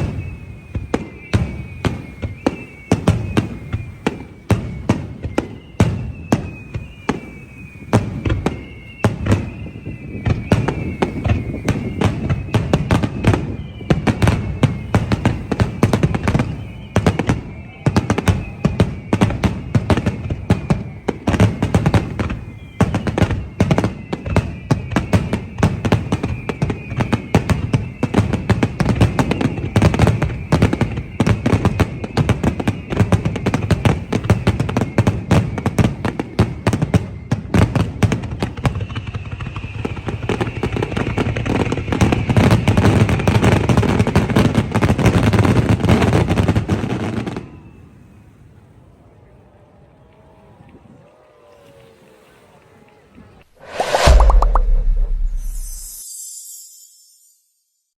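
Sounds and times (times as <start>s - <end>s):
fireworks shells bursting: 53.6s - 57.6s
high falling tone: 53.6s - 57.9s.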